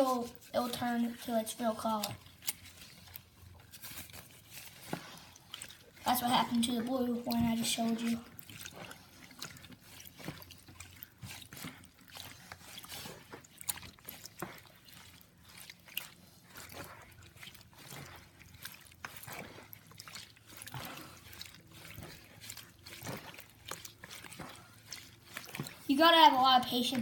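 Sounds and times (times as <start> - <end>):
slime squishing by hand: 0.0 - 27.0.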